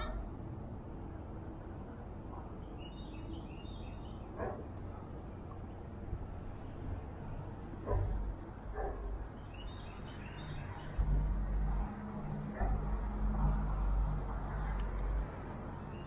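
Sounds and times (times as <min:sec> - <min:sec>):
bird chirping: 0:02.6 - 0:04.6, 0:08.8 - 0:11.2, 0:15.8 - 0:16.0.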